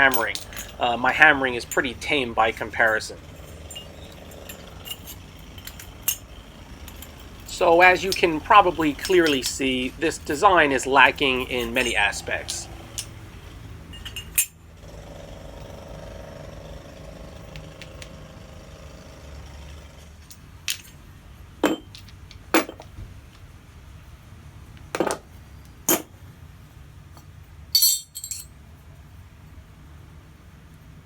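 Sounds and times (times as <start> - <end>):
metal parts clinking and knocking: 0.0 - 14.6, 20.2 - 23.0, 27.2 - 28.6
faint steady drone: 0.0 - 20.1.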